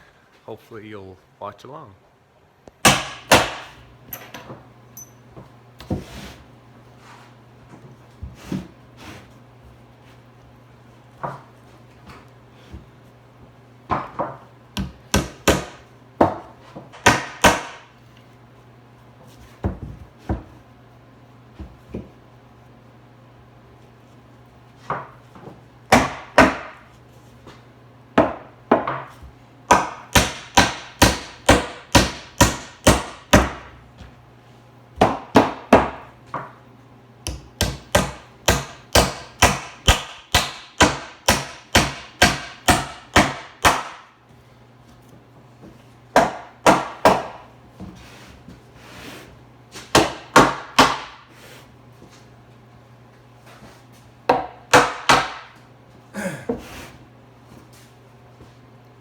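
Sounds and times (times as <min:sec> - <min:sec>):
hammer driving nails into wood: 0:02.8 - 0:03.8, 0:29.7 - 0:33.7, 0:37.3 - 0:44.1.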